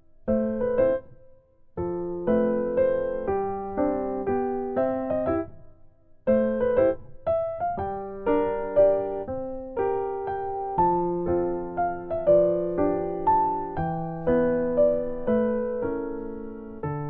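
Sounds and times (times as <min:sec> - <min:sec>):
bouncy electric piano tune: 0:06.3 - 0:17.0.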